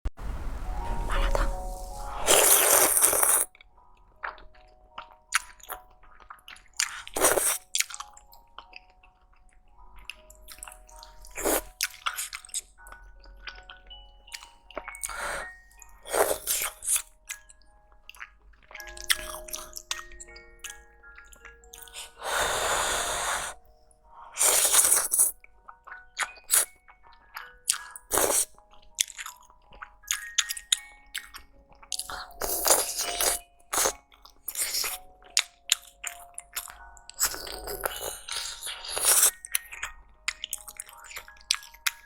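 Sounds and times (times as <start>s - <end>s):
slurping noodles: 1.1s - 3.5s, 6.8s - 7.6s, 11.3s - 12.5s, 15.0s - 17.0s, 21.9s - 23.6s, 24.3s - 25.3s, 28.1s - 28.5s, 32.0s - 35.0s
chewing: 1.1s - 23.6s, 24.2s - 42.0s.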